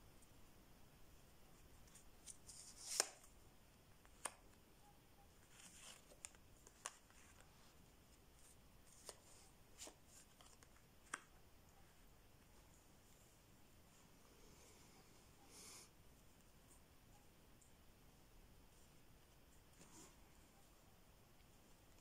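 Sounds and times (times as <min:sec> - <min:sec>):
cards rustling: 0:01.8 - 0:03.4, 0:05.4 - 0:07.6, 0:08.3 - 0:11.3
cards slapping on table: 0:02.8 - 0:03.2.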